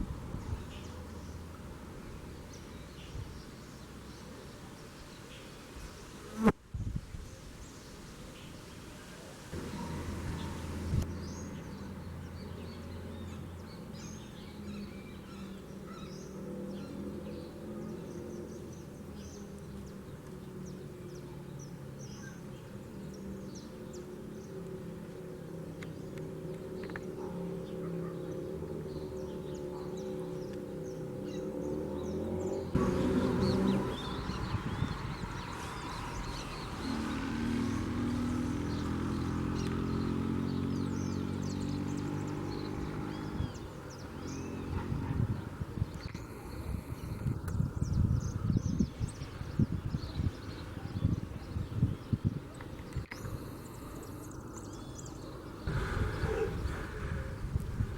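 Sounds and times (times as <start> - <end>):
wind rumbling: 0.0 - 3.5, 9.6 - 11.8, 30.3 - 57.9
steady outdoor noise: 0.0 - 57.9
birds chirping: 7.6 - 57.9.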